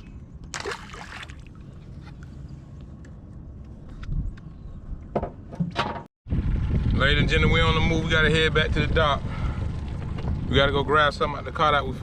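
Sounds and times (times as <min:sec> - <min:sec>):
low rumble of water and wind: 0:00.0 - 0:12.0
water splash: 0:00.5 - 0:01.6.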